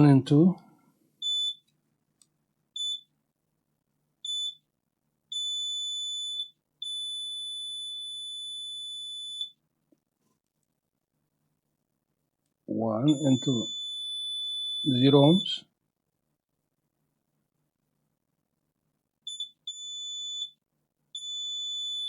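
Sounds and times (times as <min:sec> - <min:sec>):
multimeter buzzer beeping: 0:01.2 - 0:01.6, 0:02.8 - 0:03.1, 0:04.3 - 0:04.6, 0:05.4 - 0:09.6, 0:13.1 - 0:15.5, 0:19.3 - 0:20.6, 0:21.2 - 0:22.0.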